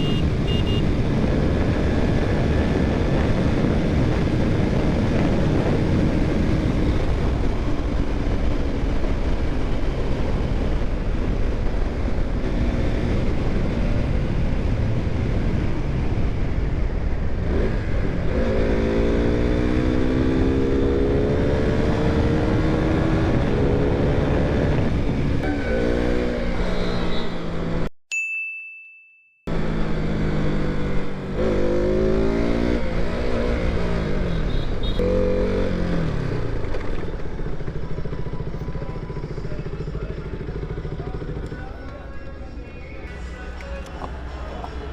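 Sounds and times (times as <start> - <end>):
wind rush on microphone: 0.4 - 18.4, 21.7 - 25.4
motorcycle engine running: 34.3 - 43.1.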